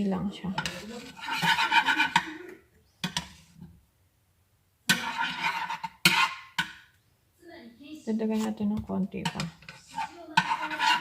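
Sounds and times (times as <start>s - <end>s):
metal utensil scraping a dish: 0.4s - 2.4s, 3.0s - 3.7s, 4.9s - 6.8s, 8.3s - 11.0s.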